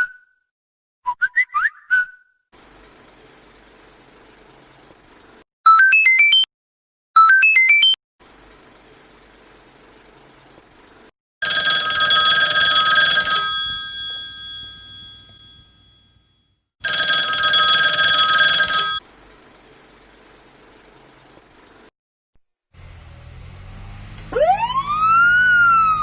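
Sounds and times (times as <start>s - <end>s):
telephone bell ringing: 11.4s - 19.0s.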